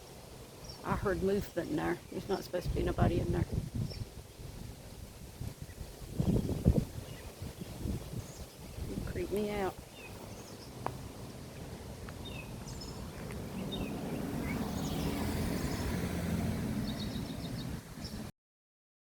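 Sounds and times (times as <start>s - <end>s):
bird chirps: 5.6s - 18.3s
vehicle engine hum: 9.2s - 18.3s.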